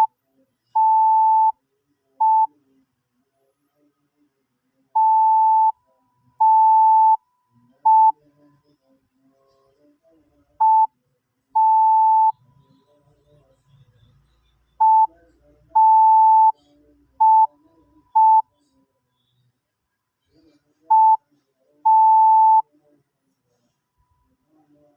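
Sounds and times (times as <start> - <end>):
morse code beeps: 5.0 - 5.8, 6.4 - 7.2, 11.6 - 12.3, 15.8 - 16.5, 18.2 - 18.4, 21.9 - 22.6.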